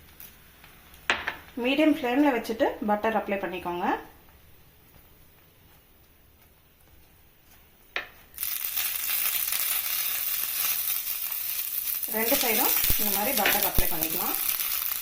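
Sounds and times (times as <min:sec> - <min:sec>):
butter sizzling in a hot pan: 0:07.4 - 0:15.0.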